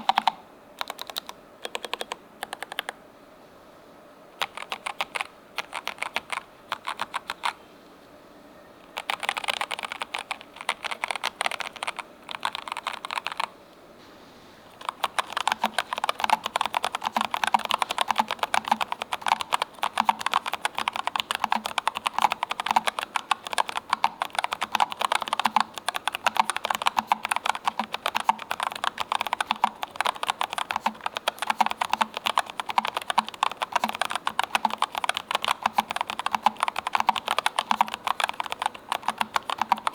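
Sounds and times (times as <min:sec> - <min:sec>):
mechanical keyboard typing: 0:00.0 - 0:03.0, 0:04.4 - 0:07.6, 0:08.8 - 0:13.5, 0:14.7 - 0:39.9.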